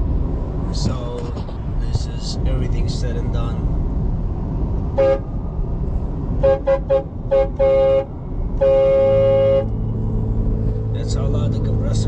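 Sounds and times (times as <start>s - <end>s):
car air horn blasts: 5.0s - 5.3s, 6.4s - 9.9s.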